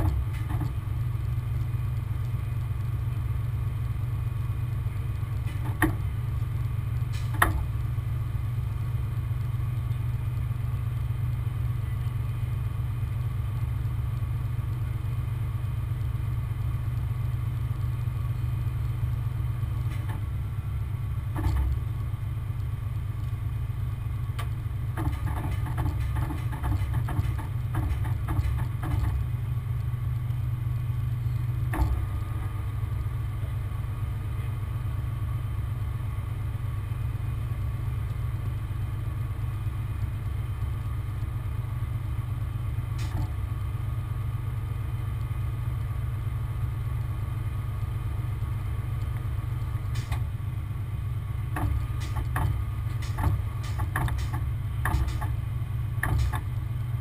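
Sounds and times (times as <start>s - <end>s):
diesel engine droning: 0.0s - 57.0s
sharp clicks and clanks: 21.3s - 23.4s, 24.4s - 29.3s, 31.7s - 32.2s, 43.0s - 43.4s, 49.0s - 50.3s, 51.5s - 56.9s.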